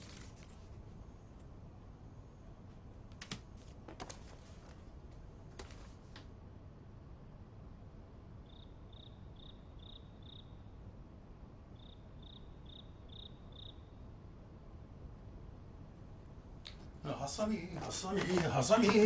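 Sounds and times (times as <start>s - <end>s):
low room tone hum: 0.0s - 19.0s
insect chirping: 8.4s - 11.0s, 11.6s - 14.3s.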